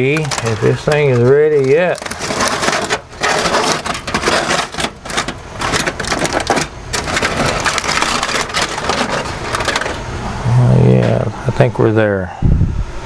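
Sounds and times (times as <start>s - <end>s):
aluminium foil crinkling: 0.0s - 10.1s.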